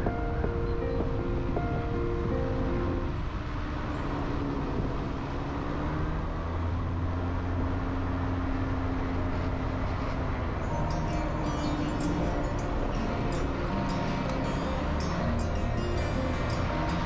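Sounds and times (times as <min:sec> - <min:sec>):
boat engine humming: 0:10.6 - 0:17.0.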